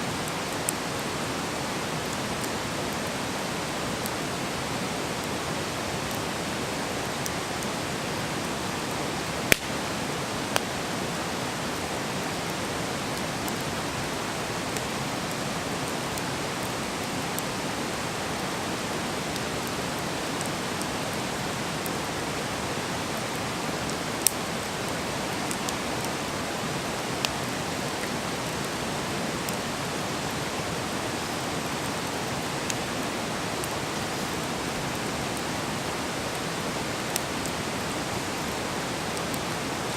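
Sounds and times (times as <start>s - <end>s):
campfire burning with hiss: 0.0s - 39.9s
fire pops and crackles: 9.2s - 10.8s, 23.0s - 26.2s, 31.2s - 39.7s.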